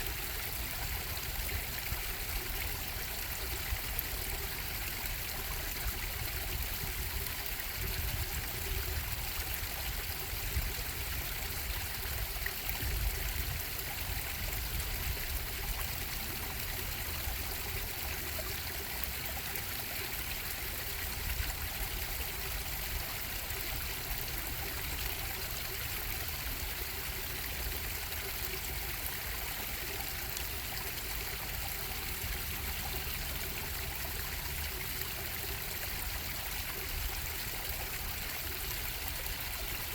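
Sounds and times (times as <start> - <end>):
stream bubbling over rocks: 0.0 - 39.9.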